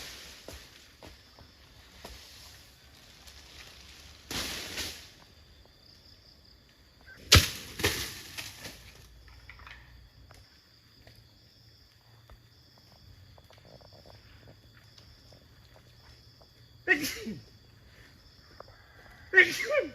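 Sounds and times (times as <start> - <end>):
sharp loud crash: 7.3 - 8.7.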